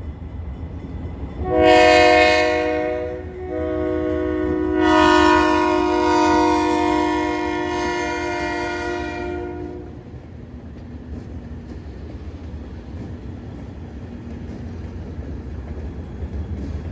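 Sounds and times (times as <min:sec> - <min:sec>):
train rumbling: 0:00.0 - 0:16.9
locomotive air horn: 0:01.4 - 0:10.0.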